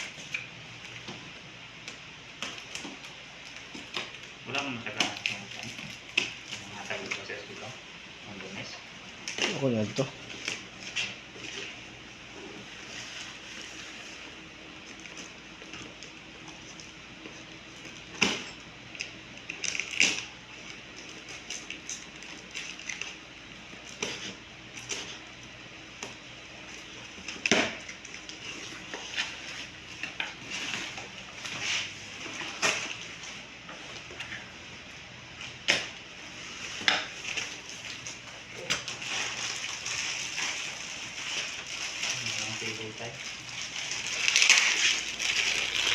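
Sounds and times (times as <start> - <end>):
package crinkling: 38.8 - 45.9.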